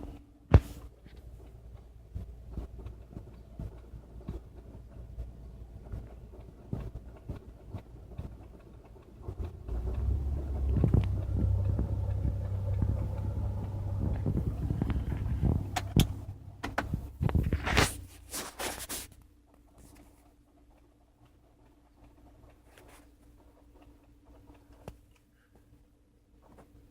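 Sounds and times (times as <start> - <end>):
low rumble: 9.0 - 18.1.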